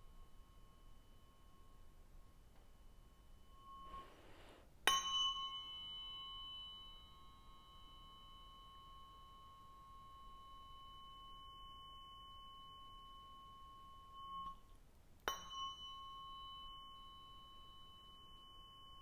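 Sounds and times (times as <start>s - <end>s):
tuning fork ringing: 0.0s - 19.0s
tuning fork tap: 10.6s - 19.0s.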